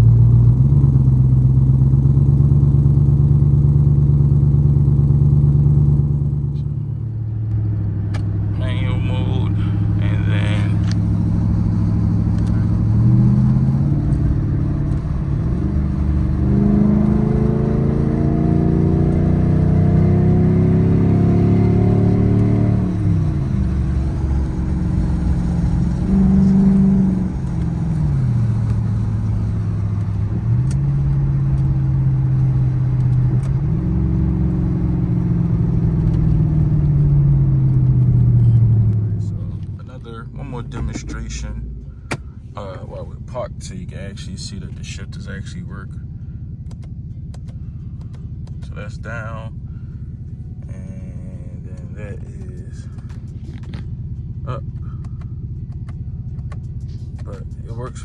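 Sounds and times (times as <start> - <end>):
car engine accelerating: 0.0 - 58.0.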